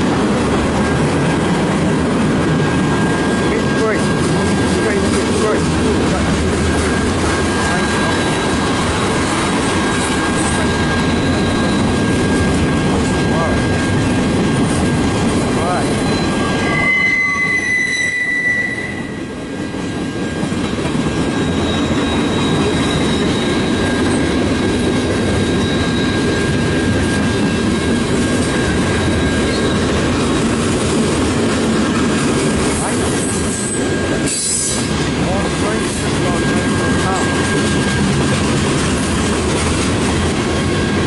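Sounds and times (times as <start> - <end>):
freight train rumbling past: 0.0 - 41.0
train wheels clacking: 0.0 - 41.0
high wheel squeal: 6.6 - 12.5, 15.6 - 19.4, 21.3 - 24.4, 25.3 - 30.4, 32.8 - 38.4.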